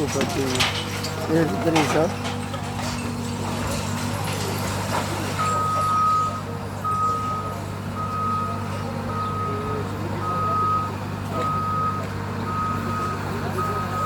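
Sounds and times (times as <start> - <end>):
diesel engine running: 0.0 - 14.0
backup alarm beeping: 5.4 - 14.0.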